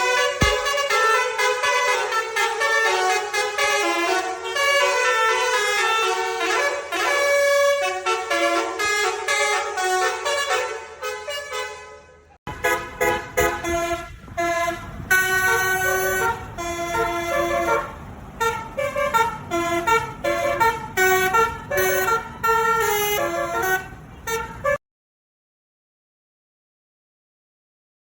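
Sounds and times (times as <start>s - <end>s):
musical bus horn playing a tune: 0.0s - 24.8s.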